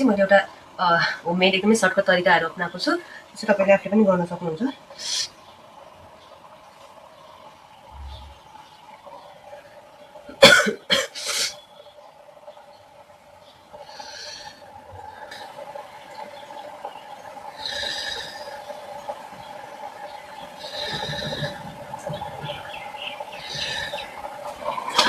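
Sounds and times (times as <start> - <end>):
steady low hum: 0.0 - 25.0
person coughing: 10.4 - 11.5
breathy hisses: 13.8 - 15.7, 17.4 - 19.1, 20.4 - 25.0.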